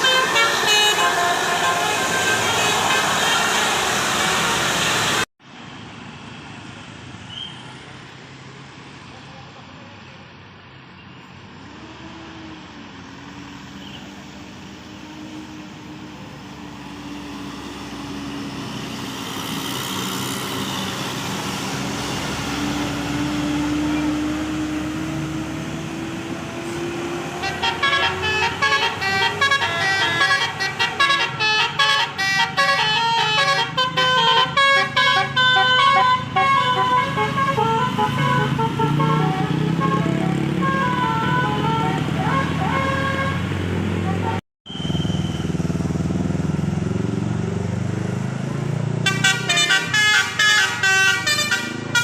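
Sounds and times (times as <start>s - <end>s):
musical air horn tune: 0.0s - 4.6s, 27.4s - 44.8s, 49.0s - 52.0s
bus engine hum: 0.0s - 52.0s.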